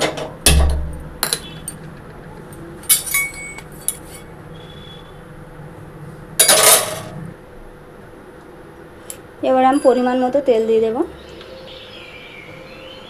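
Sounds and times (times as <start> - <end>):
pans and utensils clinking: 2.8 - 4.3, 6.4 - 7.3.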